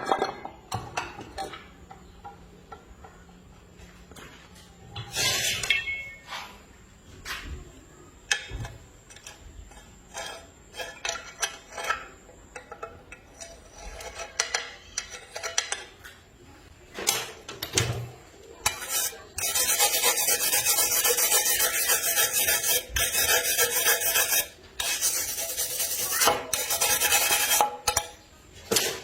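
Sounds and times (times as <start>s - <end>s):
harsh pulsing rasp: 18.7s - 27.8s.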